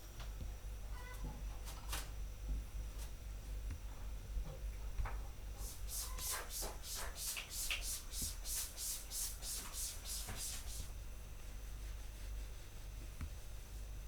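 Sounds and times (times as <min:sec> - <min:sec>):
rhythmic scraping strokes: 0:05.6 - 0:10.9.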